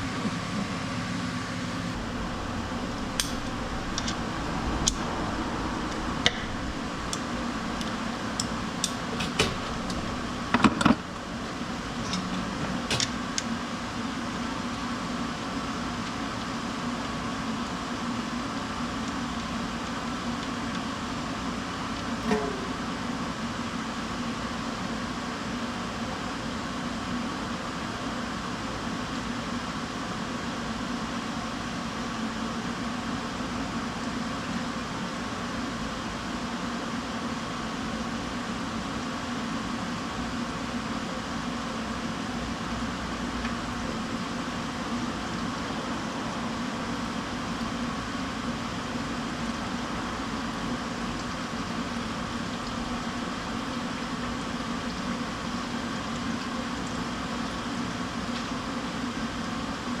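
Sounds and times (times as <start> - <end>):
steady mechanical hum: 0.0 - 60.0
even whooshing noise: 1.8 - 12.9.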